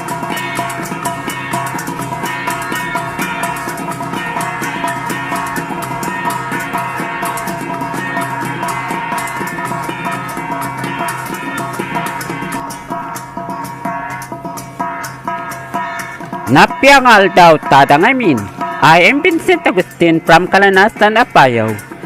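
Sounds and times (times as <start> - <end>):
instrumental background music: 0.0 - 22.0.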